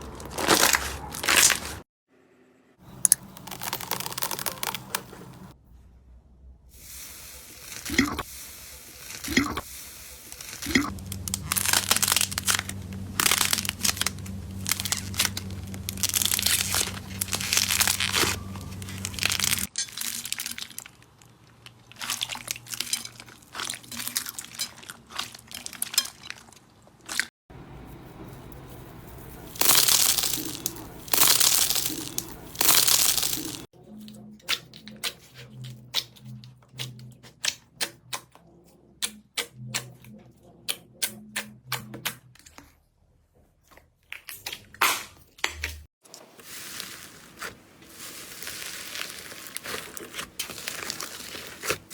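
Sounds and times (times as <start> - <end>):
slime crackling when squeezed: 3.1 - 5.5, 10.4 - 22.9, 29.4 - 33.7.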